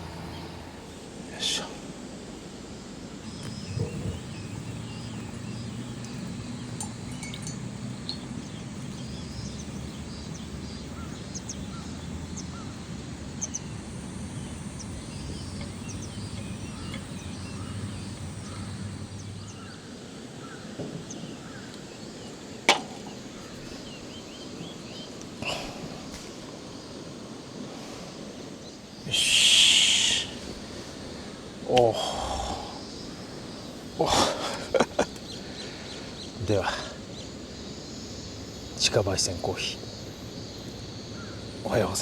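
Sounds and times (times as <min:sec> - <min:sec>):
low steady hum: 0:00.0 - 0:19.9
bird chirps: 0:03.2 - 0:27.1, 0:28.7 - 0:34.0.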